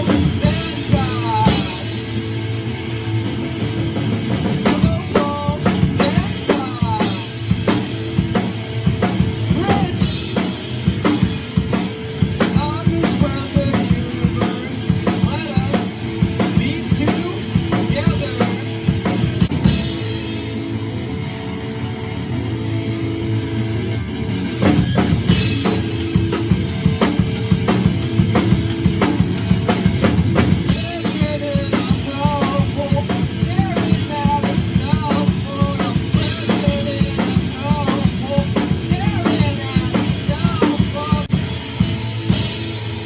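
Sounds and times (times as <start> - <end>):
rock band playing live: 0.0 - 43.0
drum kit hits: 24.4 - 43.0.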